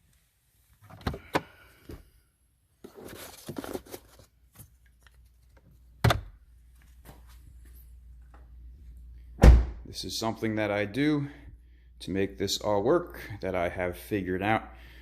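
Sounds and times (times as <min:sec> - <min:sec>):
loud thump: 0:09.4 - 0:09.8.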